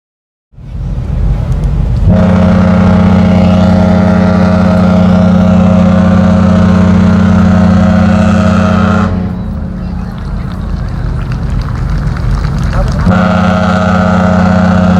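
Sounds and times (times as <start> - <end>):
low rumble: 0.6 - 14.9
ship's horn long blast: 2.0 - 10.5, 13.0 - 14.9.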